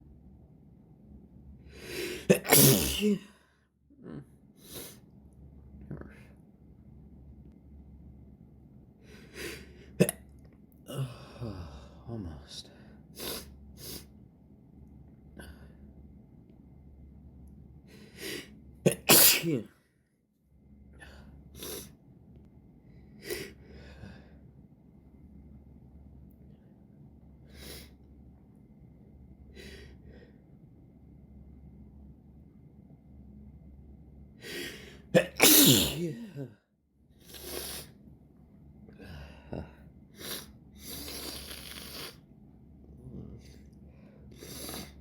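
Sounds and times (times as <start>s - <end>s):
person breathing: 1.6s - 2.3s, 23.0s - 24.5s, 29.5s - 30.5s, 34.4s - 35.1s, 38.9s - 42.2s
person inhaling: 1.6s - 2.3s, 34.4s - 35.1s, 39.0s - 42.2s, 43.9s - 45.0s
person sneezing: 2.0s - 3.4s, 18.9s - 19.6s, 35.2s - 36.5s.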